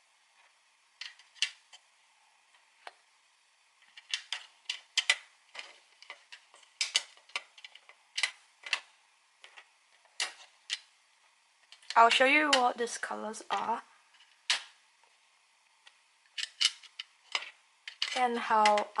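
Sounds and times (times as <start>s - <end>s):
magnetic pans clicking into palette: 3.9s - 10.9s, 11.7s - 12.8s, 16.3s - 19.0s.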